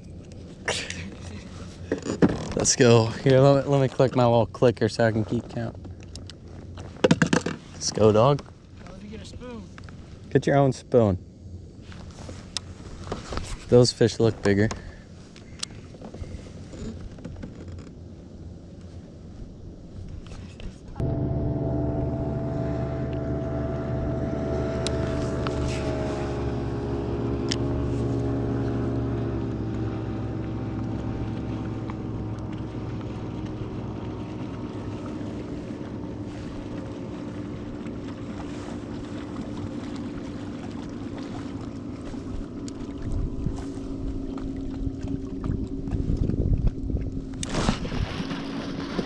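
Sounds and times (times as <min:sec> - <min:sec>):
boat motor running: 0:21.0 - 0:49.0.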